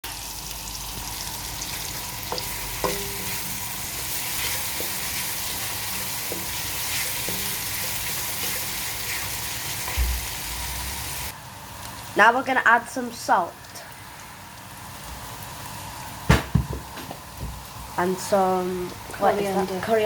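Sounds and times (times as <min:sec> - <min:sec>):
food sizzling in hot oil: 0:00.0 - 0:20.0
utensil knocking against pan: 0:02.8 - 0:03.4.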